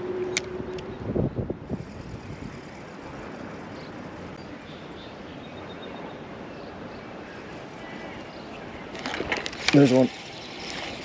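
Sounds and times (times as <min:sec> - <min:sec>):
strong wind on microphone: 0:00.0 - 0:04.4.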